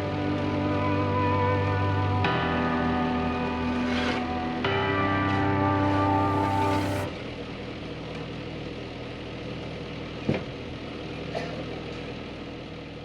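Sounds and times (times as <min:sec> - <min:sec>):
closing music: 0:00.0 - 0:07.1.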